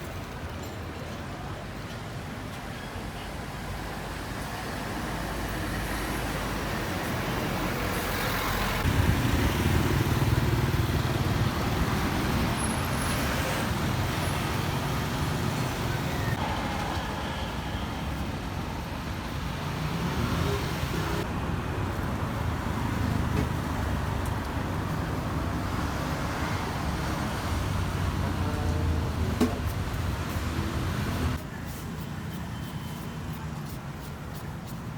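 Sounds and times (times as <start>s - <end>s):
vehicle engines passing: 4.0s - 31.4s.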